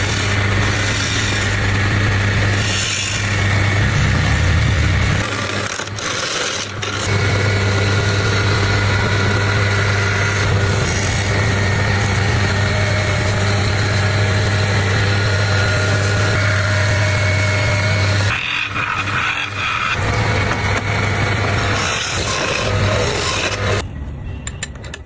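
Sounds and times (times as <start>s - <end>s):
electric motor humming: 0.0s - 18.3s.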